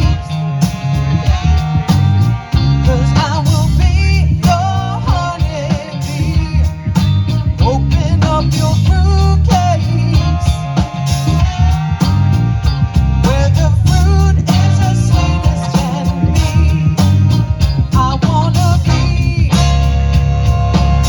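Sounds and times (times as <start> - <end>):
bass: 0.0 - 21.0
drums: 0.0 - 21.0
horn band playing funk rock: 0.0 - 21.0
sliding lead horn line: 0.0 - 21.0.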